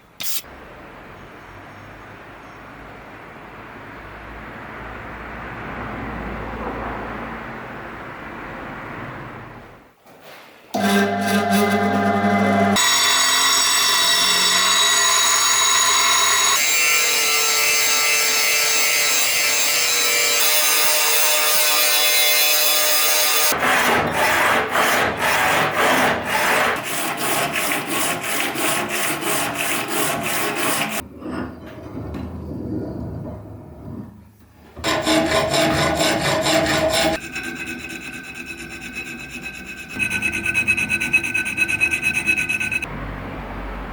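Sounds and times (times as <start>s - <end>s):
metal grinding with high whine: 10.8s - 23.5s, 34.8s - 42.9s.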